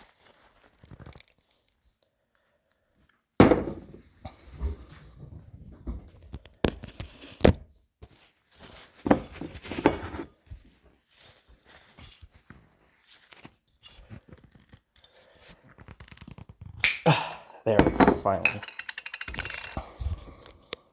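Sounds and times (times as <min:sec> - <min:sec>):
cap scraping and rubbing: 0:18.9 - 0:20.2.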